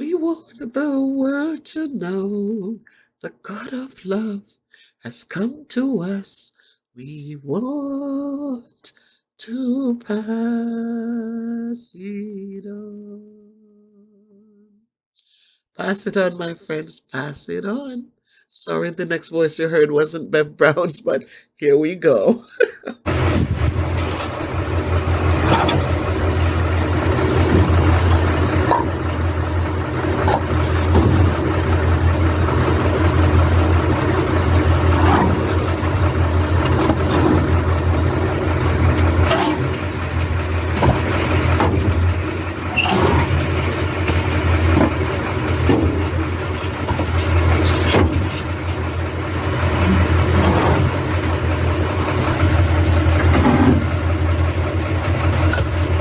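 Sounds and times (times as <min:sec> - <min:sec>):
vehicle engine idling: 0:23.1 - 0:56.0.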